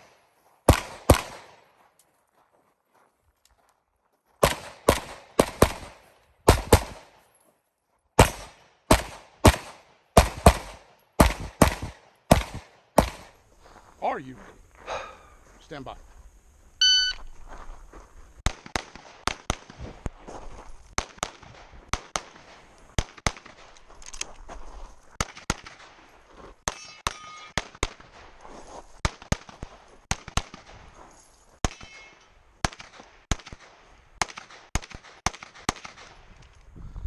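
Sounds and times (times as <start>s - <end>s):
pistol shots: 0.0s - 1.7s, 4.4s - 7.2s, 8.2s - 13.4s, 18.4s - 19.8s, 31.6s - 36.2s
shot timer beep: 16.8s - 17.3s.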